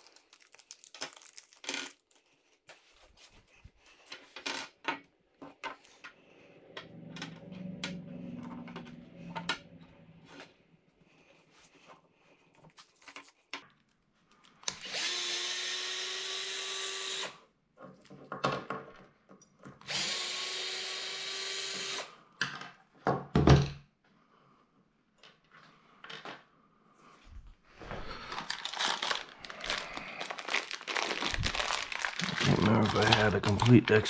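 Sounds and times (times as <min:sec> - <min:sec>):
plastic packaging crinkling: 0:00.0 - 0:02.6, 0:28.1 - 0:34.0
power drill whirring: 0:14.7 - 0:17.4, 0:19.8 - 0:22.1.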